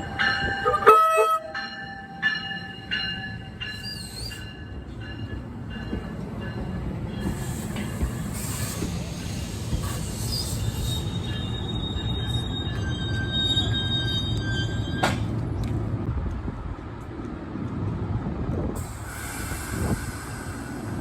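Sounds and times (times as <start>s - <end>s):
freight train cars rumbling: 0.0s - 21.0s
train wheels squealing: 1.6s - 15.4s.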